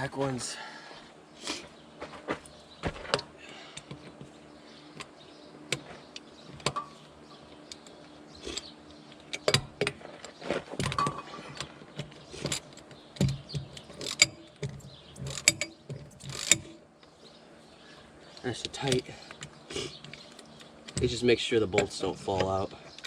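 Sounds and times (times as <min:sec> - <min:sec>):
wrench clicking and clanking: 0:12.4 - 0:16.7.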